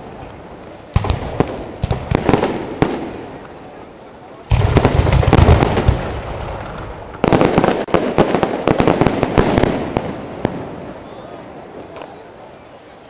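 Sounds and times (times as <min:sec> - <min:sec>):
fireworks bangs and crackles: 0:00.0 - 0:12.4.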